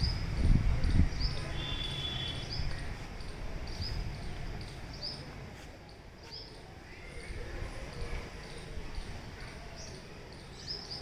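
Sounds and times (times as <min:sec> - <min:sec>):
bird calling high arching note: 0:01.4 - 0:02.6.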